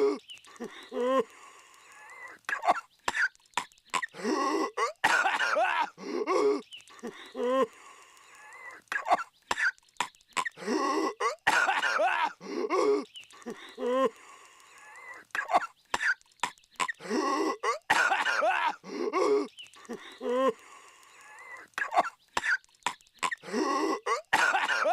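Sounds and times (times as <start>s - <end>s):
cartoon character coughing: 2.5s - 3.3s, 4.0s - 6.6s, 9.0s - 9.7s, 10.4s - 13.0s, 16.8s - 19.5s, 21.8s - 22.6s, 23.2s - 24.9s.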